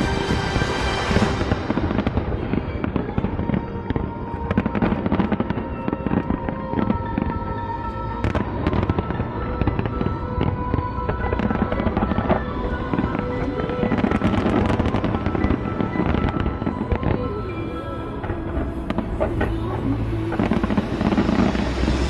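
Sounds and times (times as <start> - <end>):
fireworks popping and crackling: 0.0 - 7.4, 8.2 - 17.3
music playing: 0.0 - 22.0.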